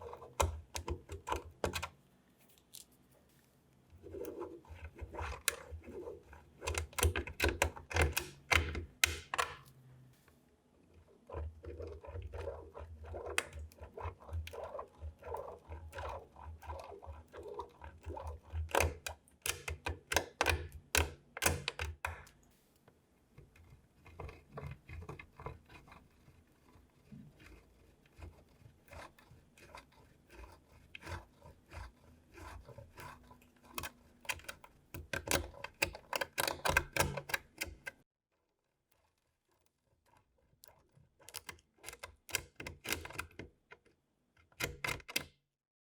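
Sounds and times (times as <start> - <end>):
knife cutting through soap: 0.0 - 2.0, 3.8 - 9.8, 10.9 - 22.3, 23.3 - 38.0.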